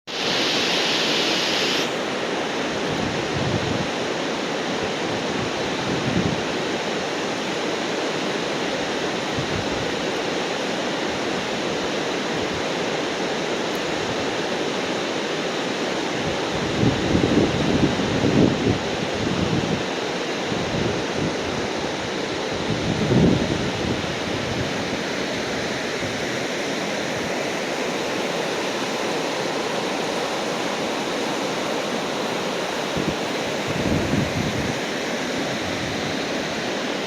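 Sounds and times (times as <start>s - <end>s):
waterfall rushing: 0.1s - 37.0s
wind buffeting microphone: 2.7s - 4.0s, 4.8s - 6.6s, 16.2s - 27.6s, 32.0s - 36.7s.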